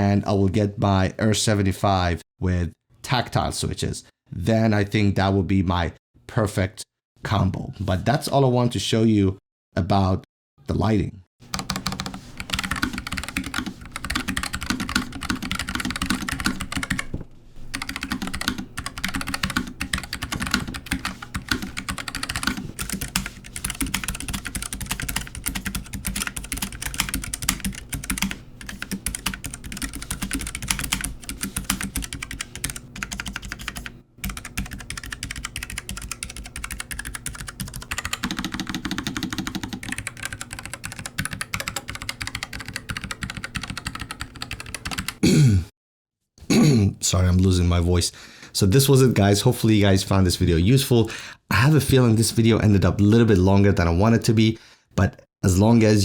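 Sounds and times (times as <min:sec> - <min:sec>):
mechanical keyboard typing: 0:11.5 - 0:17.1, 0:17.7 - 0:45.2.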